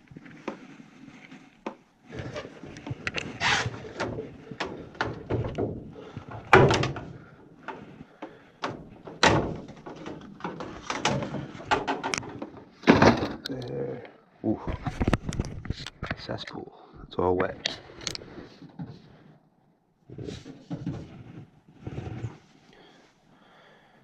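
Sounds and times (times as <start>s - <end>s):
clunks and scrapes of pump parts: 0.0s - 13.6s, 14.6s - 16.3s, 20.0s - 23.0s
loud thunks: 12.8s - 13.4s.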